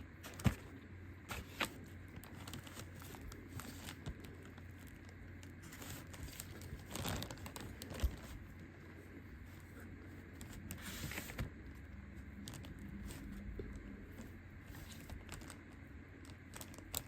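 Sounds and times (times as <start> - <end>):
crinkling rustle: 0.2 - 8.7, 12.3 - 17.0.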